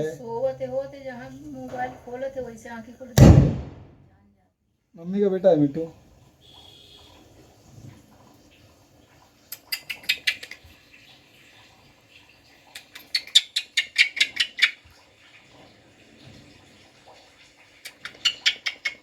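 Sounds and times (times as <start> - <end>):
parrot clicking rapidly: 9.5 - 10.7, 12.7 - 14.8, 17.8 - 19.0.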